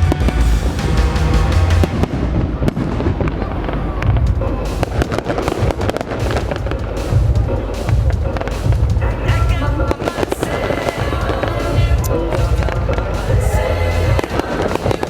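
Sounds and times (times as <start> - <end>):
loud music: 0.0 - 15.0
fireworks bangs and crackles: 1.7 - 13.5.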